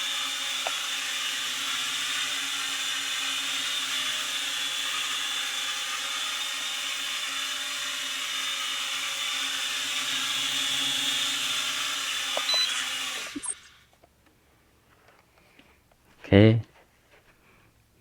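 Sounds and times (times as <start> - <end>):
toy drone motors buzzing: 0.0 - 13.9.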